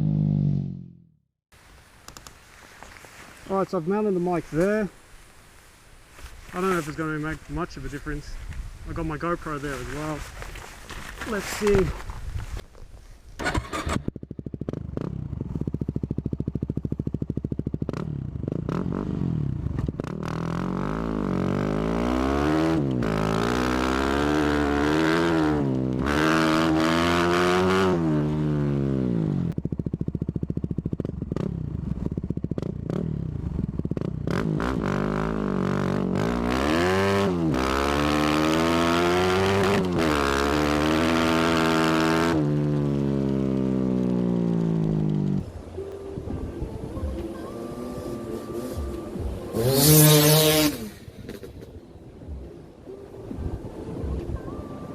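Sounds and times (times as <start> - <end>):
motorcycle engine starting and revving: 0.0 - 1.3, 13.3 - 54.9.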